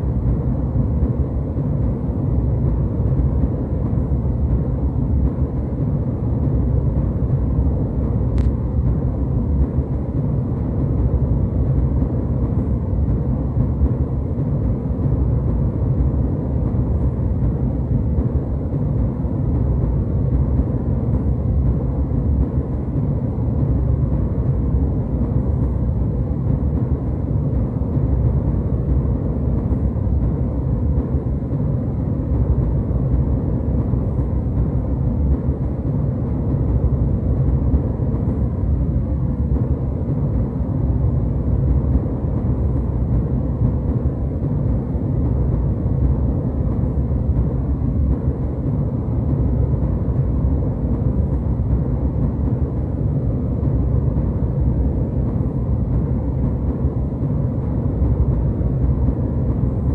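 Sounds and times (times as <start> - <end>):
jet airliner cabin rumble: 0.0 - 59.9.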